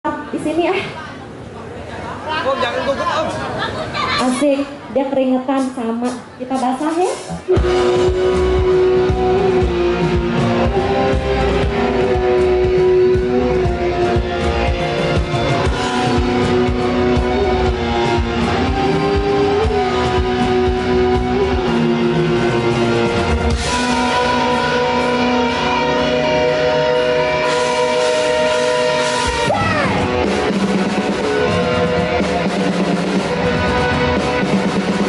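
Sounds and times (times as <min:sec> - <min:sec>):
drums: 0:03.2 - 0:35.0
live rock band playing: 0:05.6 - 0:35.0
electric guitar lines: 0:07.3 - 0:35.0.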